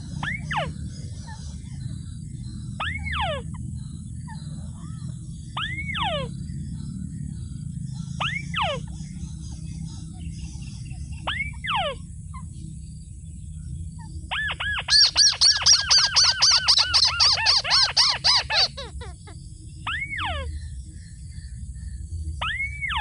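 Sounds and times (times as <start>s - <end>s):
steady low rumble: 0.0s - 23.0s
bird whistling downward: 0.2s - 0.8s, 2.8s - 3.5s, 8.2s - 8.9s, 11.2s - 12.0s, 14.3s - 18.9s, 19.8s - 20.5s, 22.4s - 23.0s.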